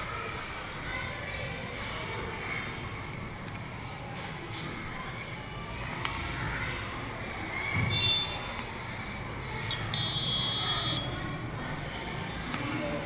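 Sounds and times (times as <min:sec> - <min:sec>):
smoke alarm buzzer beeping: 0:09.7 - 0:11.3.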